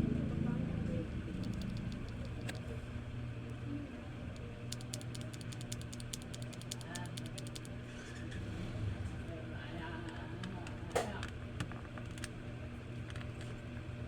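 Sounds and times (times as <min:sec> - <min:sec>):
steady low hum: 0:00.0 - 0:14.0
mechanical keyboard typing: 0:01.4 - 0:02.8, 0:04.7 - 0:07.8.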